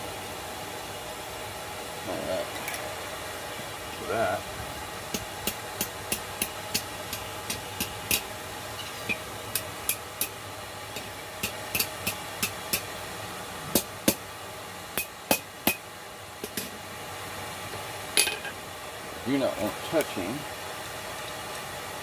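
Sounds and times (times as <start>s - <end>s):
steady hiss: 0.0s - 22.0s
hammer striking steel on anvil: 11.0s - 12.9s, 15.0s - 15.8s.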